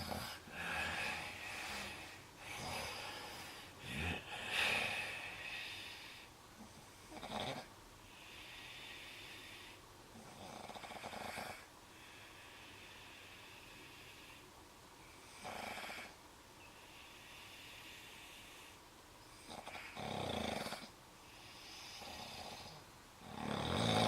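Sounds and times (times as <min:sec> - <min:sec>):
person snoring: 0:00.0 - 0:06.2, 0:21.8 - 0:24.0.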